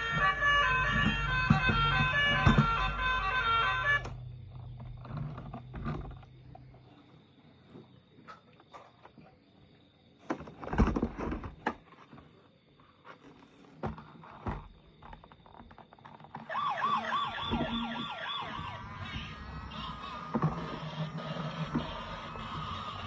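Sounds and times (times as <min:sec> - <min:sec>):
toy siren warbling: 0:00.0 - 0:04.2, 0:16.4 - 0:23.0.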